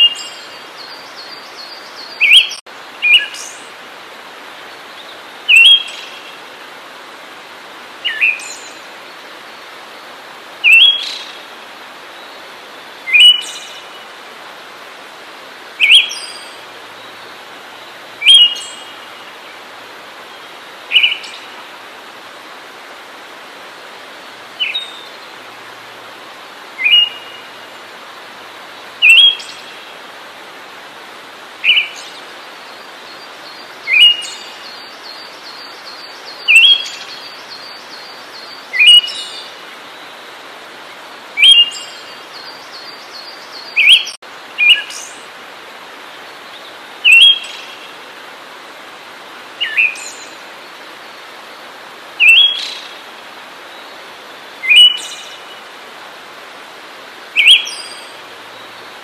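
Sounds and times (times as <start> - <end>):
steady hiss: 0.0 - 59.0
songbird sharp calls: 18.2 - 18.9, 26.8 - 27.5, 29.0 - 29.7, 38.8 - 39.5, 52.2 - 53.0, 54.6 - 55.5, 57.4 - 58.1.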